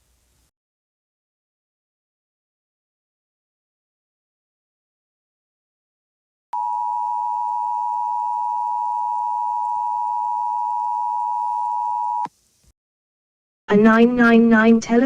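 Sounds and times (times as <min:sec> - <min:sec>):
two-tone electronic alert tone: 0:06.6 - 0:12.3.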